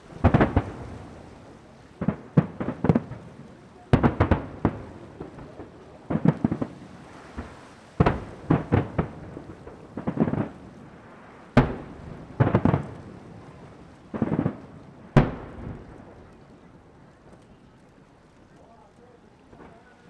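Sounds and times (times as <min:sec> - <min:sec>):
sharp firework bangs: 0:00.0 - 0:01.3, 0:03.9 - 0:10.6, 0:11.5 - 0:13.0, 0:14.2 - 0:16.2
fireworks booming: 0:00.0 - 0:20.0.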